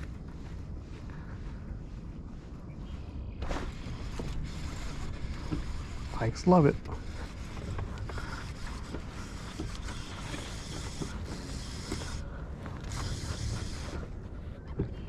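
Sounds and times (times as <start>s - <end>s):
fishing reel whirring: 3.9s - 14.1s
fishing reel creaking: 4.0s - 14.1s.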